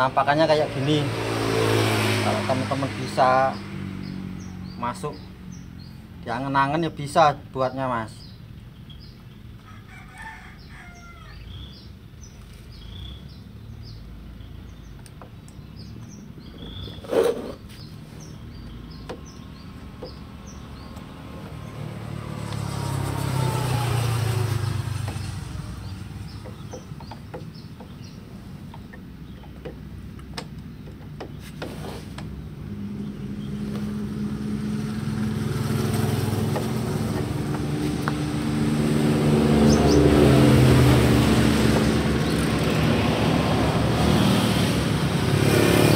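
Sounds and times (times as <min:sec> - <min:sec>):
vehicle passing by: 0:00.0 - 0:06.9, 0:16.9 - 0:27.0, 0:31.7 - 0:45.9
engine approaching: 0:00.0 - 0:07.3, 0:11.5 - 0:31.2, 0:31.8 - 0:45.9
small birds chirping: 0:01.9 - 0:45.1.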